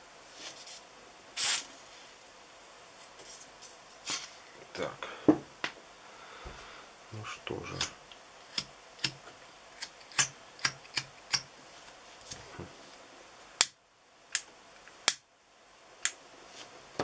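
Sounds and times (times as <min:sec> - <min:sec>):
sharp plastic clicks of lighter: 0:13.6 - 0:15.2.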